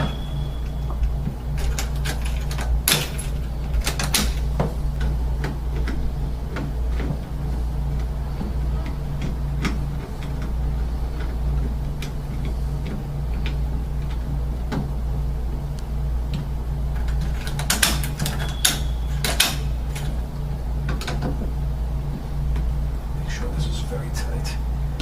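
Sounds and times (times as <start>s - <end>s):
metal door lock clicking and rattling: 0.0s - 7.3s, 16.3s - 20.2s
steady low hum: 0.0s - 25.0s.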